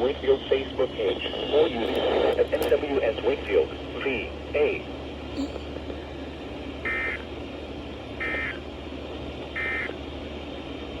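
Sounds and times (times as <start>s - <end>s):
radio hum and hiss: 0.0s - 7.3s.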